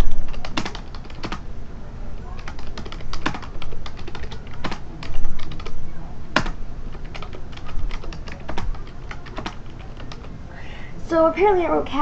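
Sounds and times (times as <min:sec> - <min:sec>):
fast keyboard typing: 0:00.0 - 0:01.4, 0:02.3 - 0:10.3.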